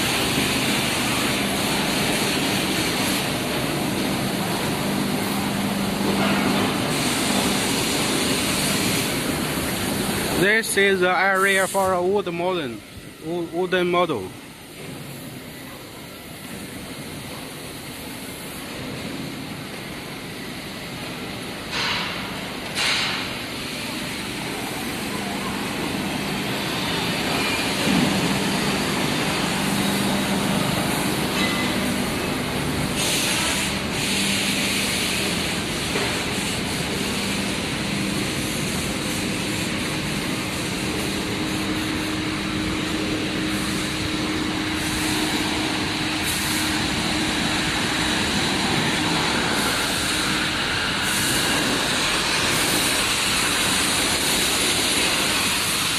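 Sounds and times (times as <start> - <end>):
industrial machinery din: 0.0 - 15.1, 21.6 - 55.9
short hissing bursts: 11.2 - 12.1.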